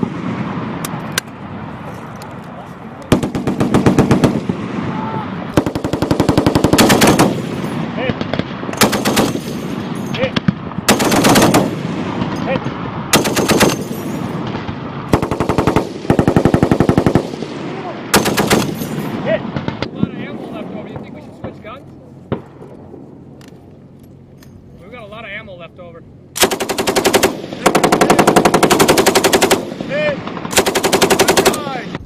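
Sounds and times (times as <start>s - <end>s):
machine gun bursts: 5.6s - 7.4s, 8.8s - 9.6s, 10.9s - 11.7s, 13.2s - 14.0s, 18.2s - 19.0s, 26.4s - 29.7s, 30.5s - 31.8s.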